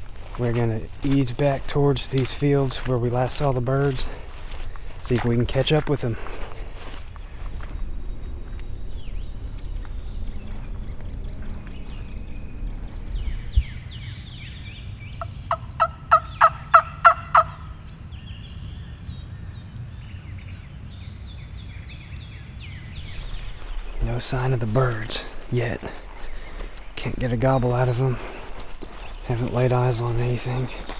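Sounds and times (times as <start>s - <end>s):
songbirds chirping faintly: 0.0s - 30.9s
turkey yelps: 15.2s - 17.7s.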